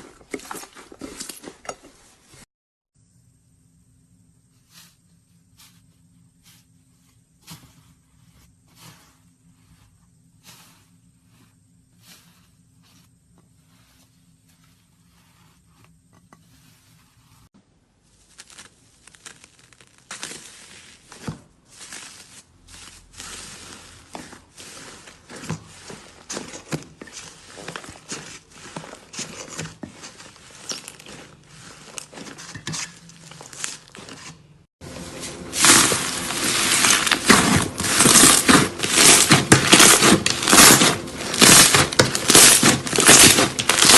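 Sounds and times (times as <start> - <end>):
slime popping sticky: 18.2 - 20.8, 35.6 - 43.9.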